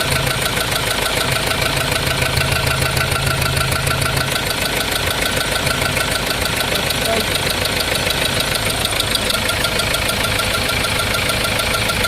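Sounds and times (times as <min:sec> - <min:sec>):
engine idling with fast knock: 0:00.0 - 0:12.0.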